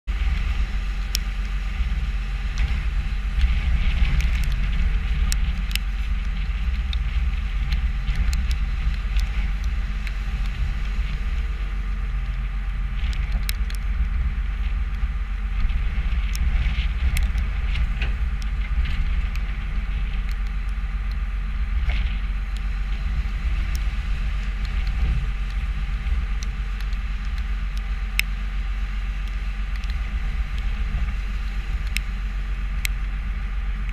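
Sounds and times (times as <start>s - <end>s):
diesel engine under load: 0.1s - 33.9s
sharp clicks and knocks: 3.4s - 11.2s, 12.3s - 23.0s, 29.2s - 32.2s.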